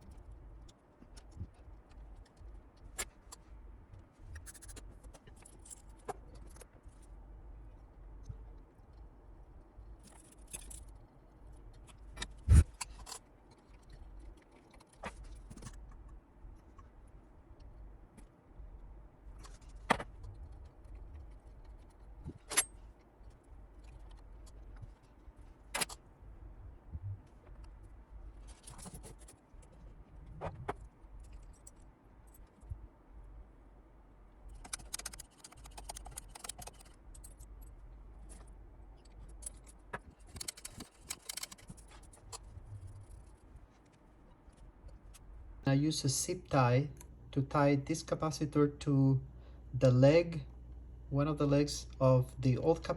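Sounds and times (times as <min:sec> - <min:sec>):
tools clicking and tapping: 0:34.5 - 0:37.7, 0:38.3 - 0:42.5.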